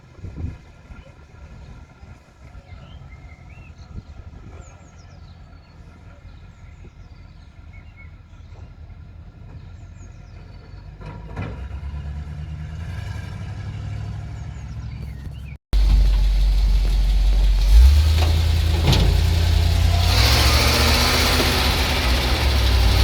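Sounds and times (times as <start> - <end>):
truck engine rumbling: 11.5 - 23.0
birds chirping: 14.3 - 23.0.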